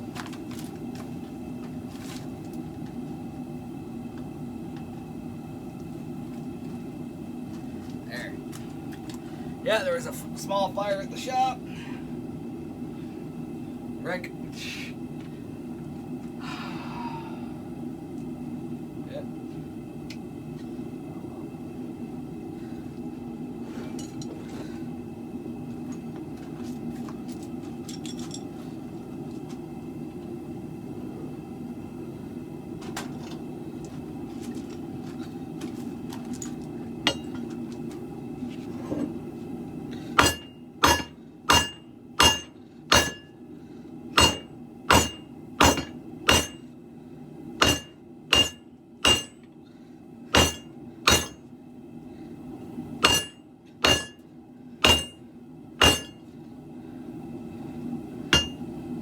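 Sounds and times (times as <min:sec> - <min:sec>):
hammer striking blade on anvil: 0:37.1 - 0:37.4, 0:40.2 - 0:43.3, 0:44.2 - 0:46.6, 0:47.6 - 0:49.4, 0:50.3 - 0:51.4, 0:53.0 - 0:54.2, 0:54.8 - 0:55.2, 0:55.8 - 0:56.2, 0:58.3 - 0:58.6.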